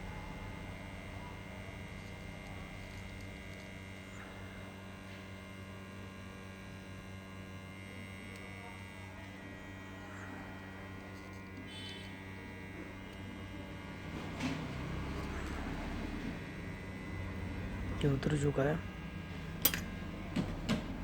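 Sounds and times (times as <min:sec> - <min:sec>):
electrical mains hum: 0:00.0 - 0:21.0.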